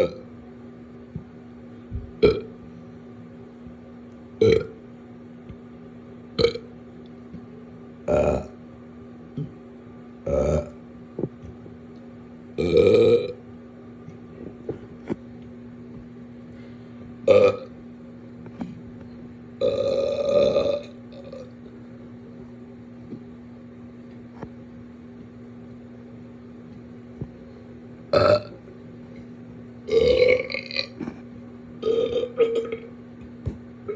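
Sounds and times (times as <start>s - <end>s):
person burping: 2.2s - 2.5s, 6.4s - 6.6s, 10.3s - 10.8s, 12.6s - 13.4s, 17.3s - 17.7s, 19.6s - 21.5s, 28.2s - 28.5s, 29.9s - 31.0s, 31.8s - 32.9s.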